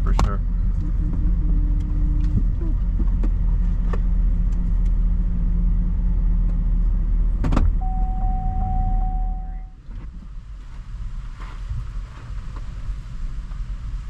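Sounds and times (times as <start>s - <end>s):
car engine and road rumble: 0.0s - 14.0s
electronic warning tone: 7.8s - 9.8s.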